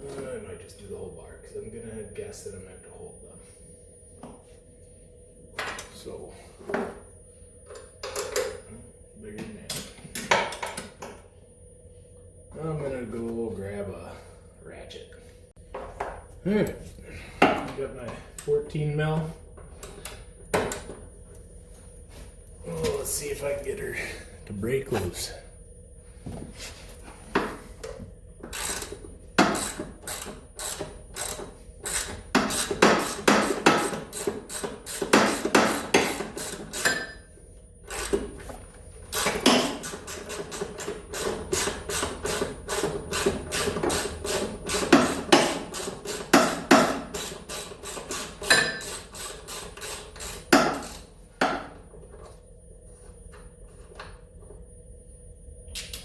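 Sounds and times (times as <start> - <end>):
hand ratchet clicking: 28.5 - 29.0, 39.2 - 51.0.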